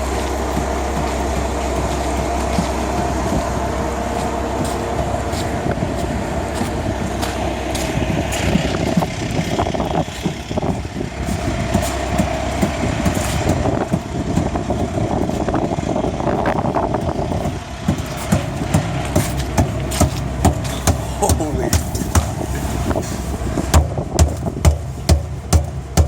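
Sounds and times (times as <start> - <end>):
whine: 0.0 - 17.6
knocks and rattles: 0.0 - 23.0, 23.6 - 26.0
concrete mixer truck rumbling: 0.0 - 26.0.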